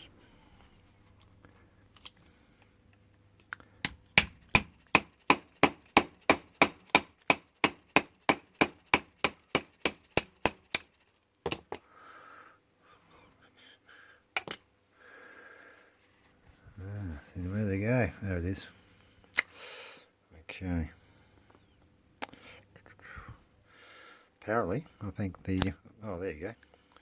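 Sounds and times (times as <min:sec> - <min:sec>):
hammer tapping metal punch: 0:03.8 - 0:10.9.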